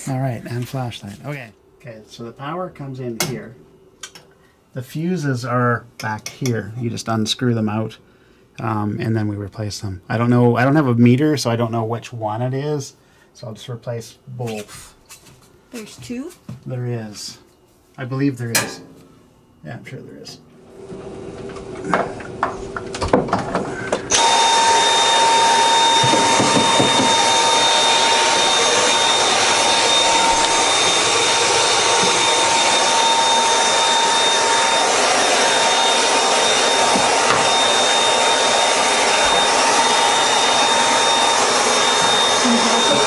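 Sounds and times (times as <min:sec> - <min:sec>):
electric blower motor whining: 0:20.7 - 0:43.0.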